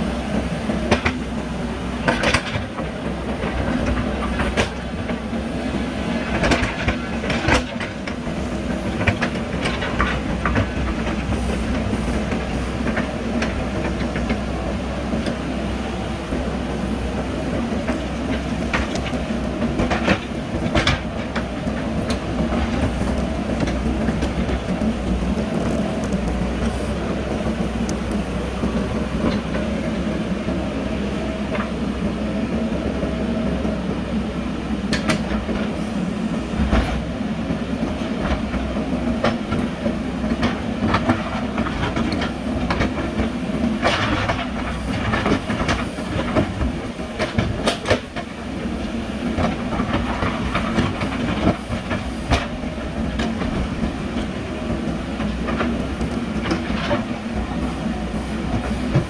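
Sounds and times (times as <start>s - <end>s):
diesel engine running: 0.0s - 32.2s.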